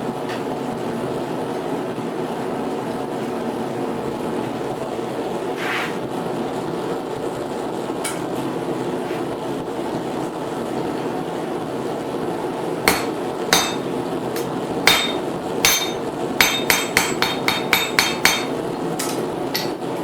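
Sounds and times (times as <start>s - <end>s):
steady background noise: 0.0s - 20.0s
hammer ringing on hot steel: 12.9s - 19.9s.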